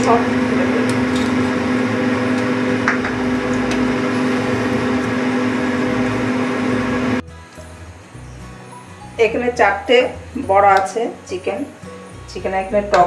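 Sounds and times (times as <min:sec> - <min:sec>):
exhaust fan hum: 0:00.0 - 0:08.1
food frying: 0:00.0 - 0:13.0.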